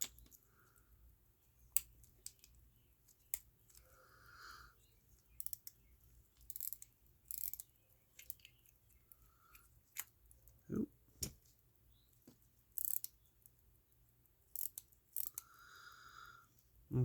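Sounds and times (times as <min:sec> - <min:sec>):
small tools clicking and rattling: 0:05.4 - 0:10.6, 0:12.7 - 0:13.6, 0:14.5 - 0:15.4.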